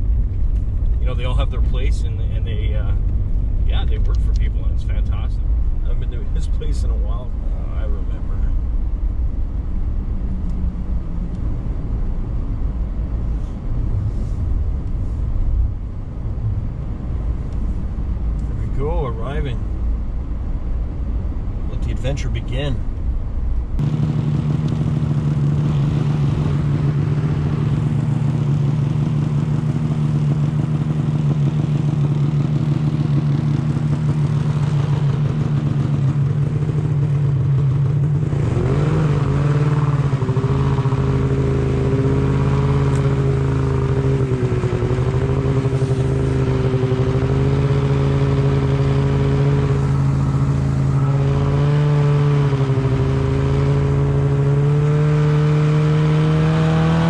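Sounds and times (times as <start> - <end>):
snowmobile engine revving: 23.8 - 57.0.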